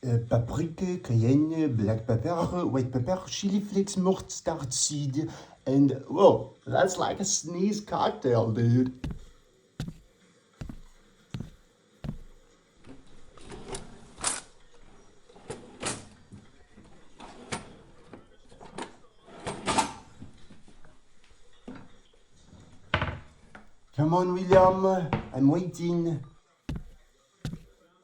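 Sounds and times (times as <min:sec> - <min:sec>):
knocks on cabinet: 0:09.0 - 0:10.0, 0:10.6 - 0:12.4, 0:26.7 - 0:27.7.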